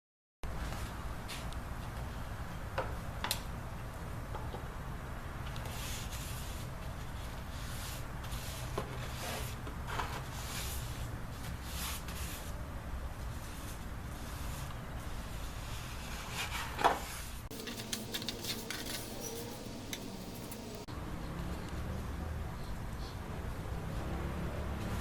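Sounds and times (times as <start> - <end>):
wood scraping: 17.5 - 20.9.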